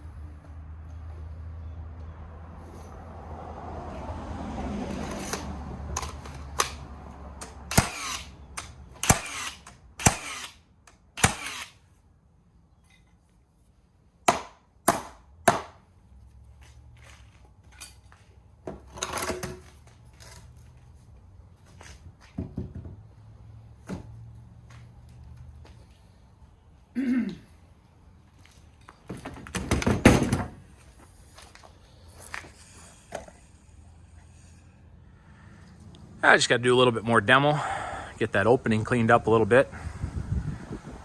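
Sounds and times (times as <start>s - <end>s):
nails hammered into wood: 7.4s - 10.5s, 11.2s - 11.7s, 14.2s - 15.8s.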